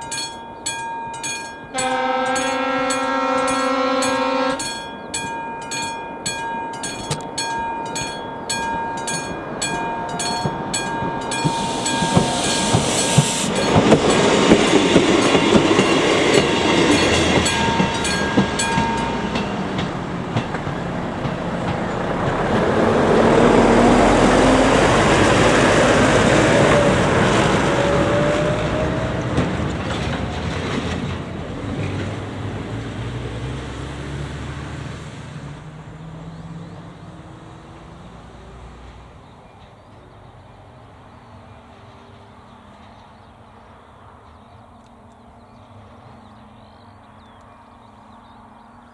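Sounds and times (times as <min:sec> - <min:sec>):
level crossing bell ringing: 0:00.0 - 0:14.9, 0:15.8 - 0:19.8
train wheels clattering: 0:00.0 - 0:32.6
loud passing traffic: 0:00.0 - 0:48.9
road vehicle pulling away: 0:09.0 - 0:39.4.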